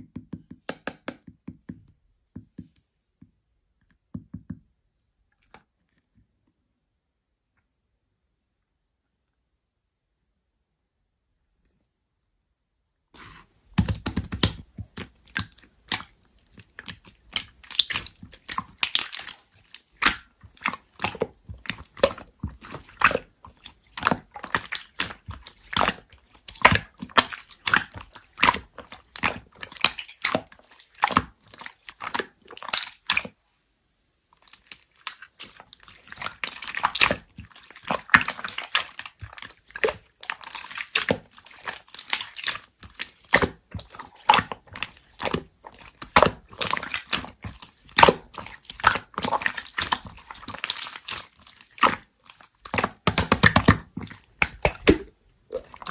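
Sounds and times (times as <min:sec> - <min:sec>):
slime squishing with sticky pops: 0:13.2 - 0:33.4, 0:34.4 - 0:55.9.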